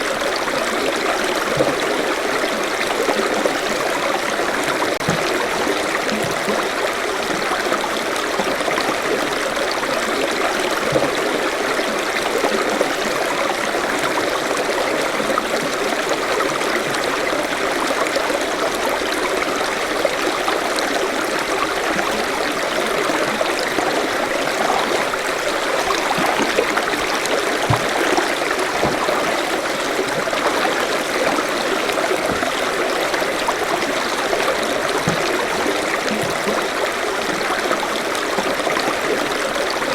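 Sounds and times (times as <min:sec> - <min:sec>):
stream flowing over rocks: 0:00.0 - 0:39.9.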